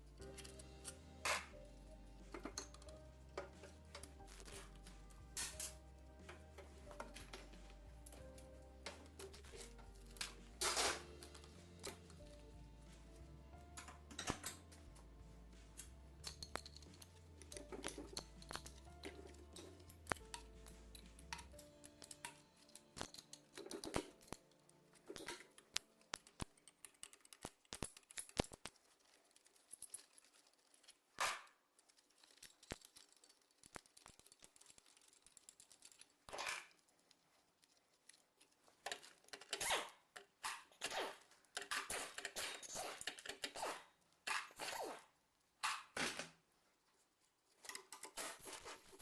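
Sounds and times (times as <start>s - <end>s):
tools and metal parts clattering: 13.8s - 14.7s, 15.8s - 24.4s, 41.6s - 43.6s.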